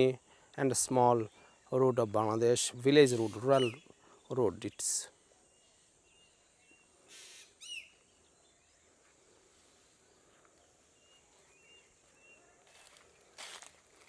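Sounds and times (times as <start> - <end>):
high bird chirp: 3.1 - 4.8, 5.5 - 8.8
faint bird calls: 5.4 - 13.3.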